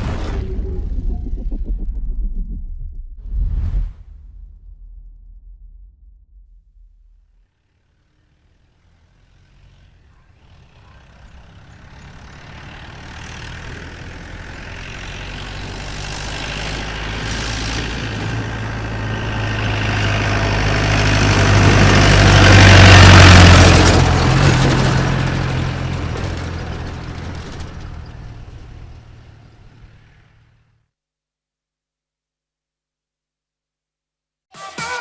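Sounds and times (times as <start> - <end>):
bus driving past: 7.3 - 30.8.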